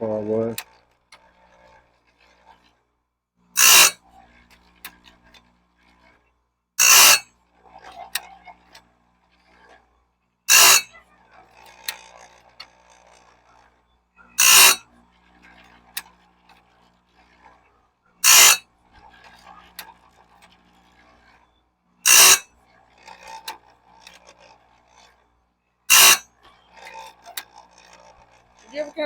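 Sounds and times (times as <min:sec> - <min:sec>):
grinding wheel on saw teeth: 0:03.6 - 0:04.0, 0:06.8 - 0:07.3, 0:10.5 - 0:13.8, 0:14.4 - 0:14.8, 0:18.2 - 0:18.6, 0:22.1 - 0:25.3, 0:25.9 - 0:29.0.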